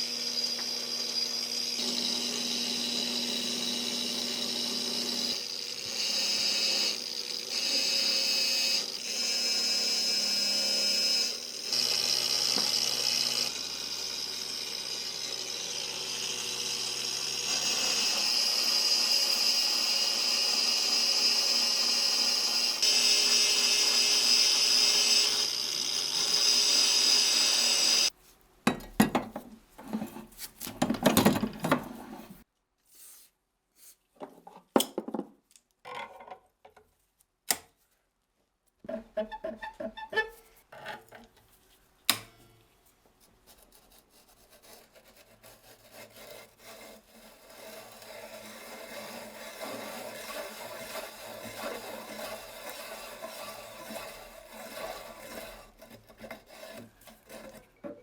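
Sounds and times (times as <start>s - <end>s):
power tool whining on metal: 0.0s - 28.1s, 46.6s - 58.0s.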